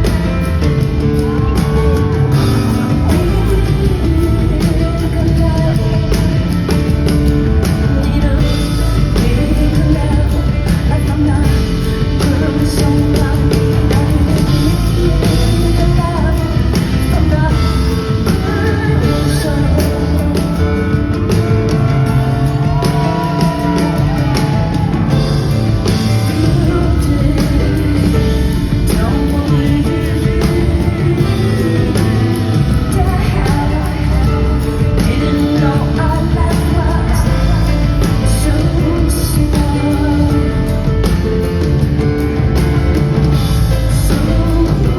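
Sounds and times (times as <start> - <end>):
full band playing: 0.0 - 44.9
woman singing: 0.0 - 44.9.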